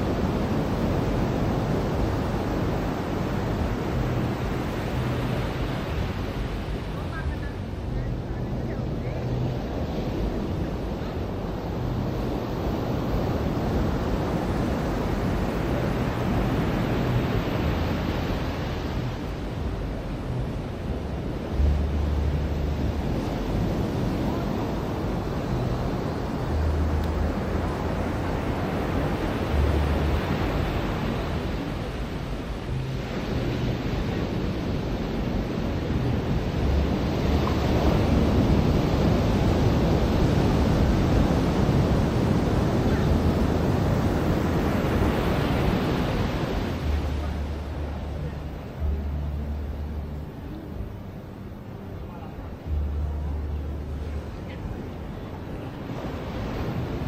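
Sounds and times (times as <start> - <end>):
ocean surf on a beach: 0.0 - 57.0.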